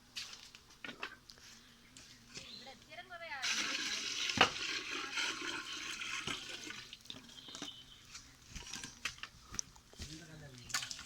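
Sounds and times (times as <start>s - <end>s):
water pouring into pot: 3.4s - 7.3s.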